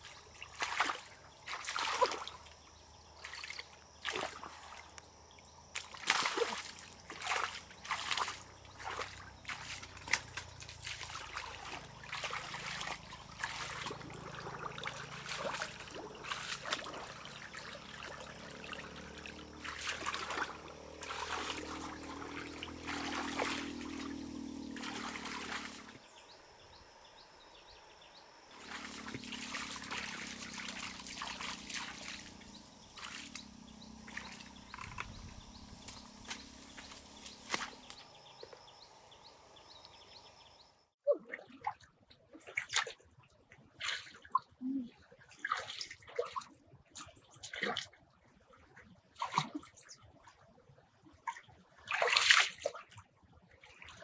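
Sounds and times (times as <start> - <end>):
water trickling and splashing: 0.0 - 26.0, 28.5 - 38.2.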